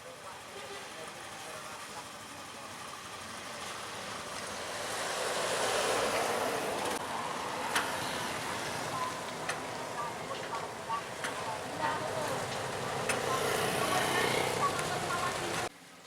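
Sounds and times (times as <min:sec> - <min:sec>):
vehicle passing by: 0:03.4 - 0:15.7.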